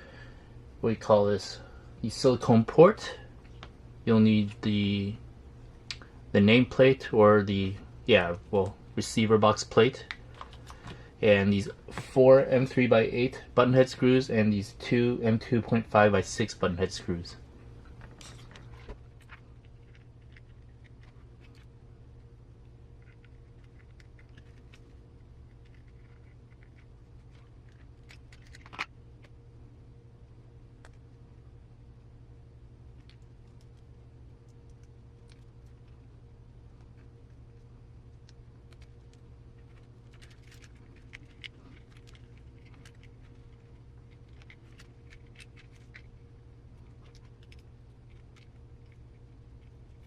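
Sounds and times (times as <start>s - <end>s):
low steady hum: 0.0s - 50.0s
small plastic parts clicking: 38.1s - 46.1s.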